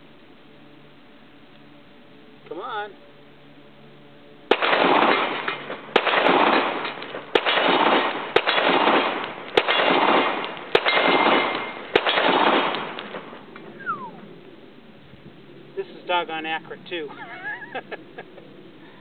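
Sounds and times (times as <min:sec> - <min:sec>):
pistol shots echoing: 0:04.5 - 0:13.4.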